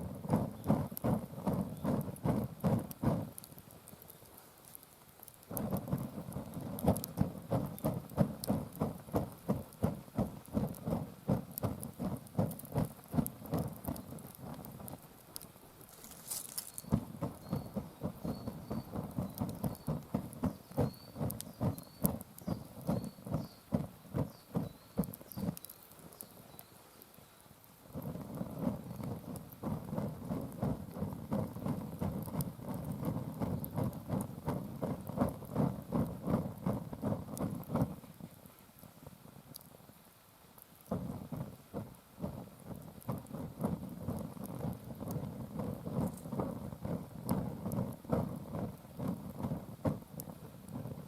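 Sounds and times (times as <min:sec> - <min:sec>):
hand fan whooshing air: 0:00.0 - 0:03.4.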